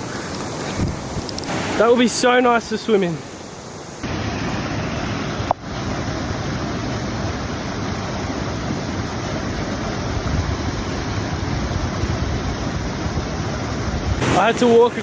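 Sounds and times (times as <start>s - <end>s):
wind buffeting microphone: 0.0s - 1.4s, 8.5s - 15.0s
flowing water: 0.0s - 15.0s.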